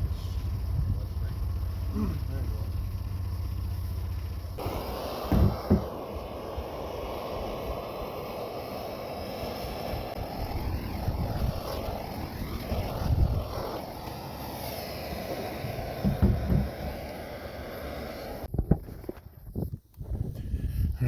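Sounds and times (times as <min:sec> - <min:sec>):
off-road vehicle engines rumbling: 0:00.0 - 0:04.6.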